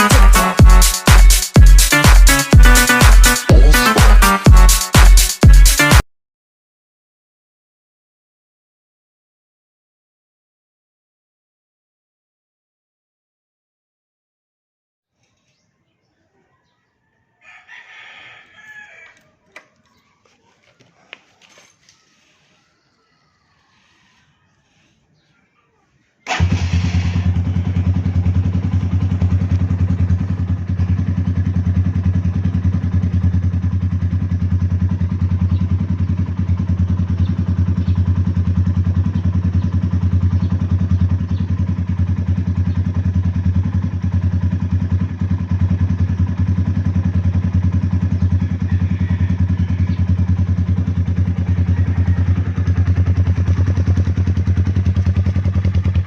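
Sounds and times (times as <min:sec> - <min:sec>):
motorcycle engine idling: 0:26.3 - 0:56.0.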